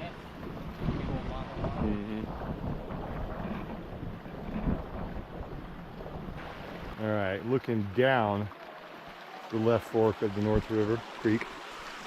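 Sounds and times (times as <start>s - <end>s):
creek water gurgling over rock: 0.0s - 12.0s
wind buffeting microphone: 0.2s - 7.0s.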